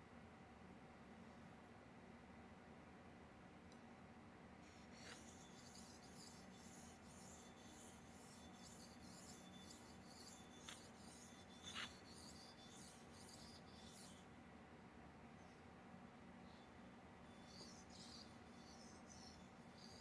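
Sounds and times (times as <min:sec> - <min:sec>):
razor scraping on sharpening stone: 0:04.7 - 0:14.3, 0:17.3 - 0:20.0.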